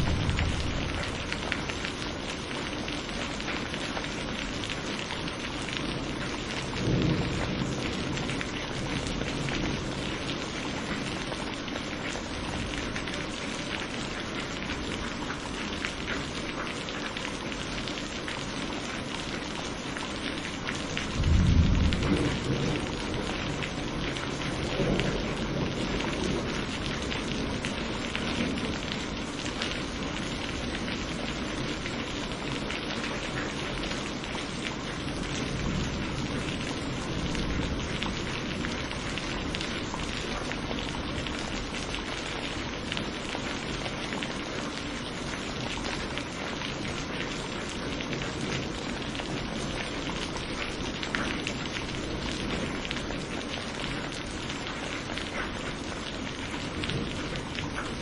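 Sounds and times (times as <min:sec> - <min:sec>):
low thunder roll: 0:00.0 - 0:01.6, 0:21.1 - 0:25.8
steady rain pouring: 0:00.0 - 0:58.0.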